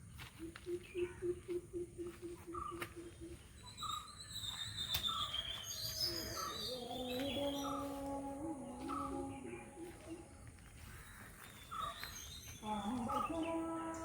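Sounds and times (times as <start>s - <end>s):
bird chirping: 0.0s - 14.0s
fast low bird trill: 0.7s - 7.0s
high whistled bird notes: 3.6s - 7.8s.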